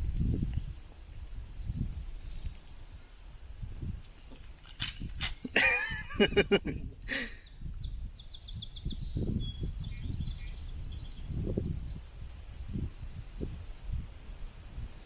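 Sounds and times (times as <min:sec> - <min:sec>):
wind rumble on microphone: 0:00.0 - 0:15.0
small birds chirping: 0:06.2 - 0:12.1.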